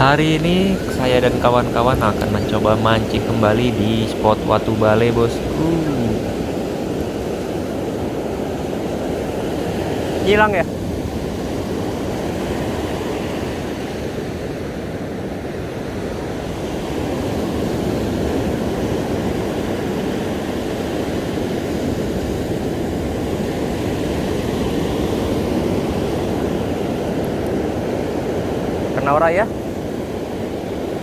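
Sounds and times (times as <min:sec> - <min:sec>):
ocean surf breaking on beach: 0:00.0 - 0:31.0.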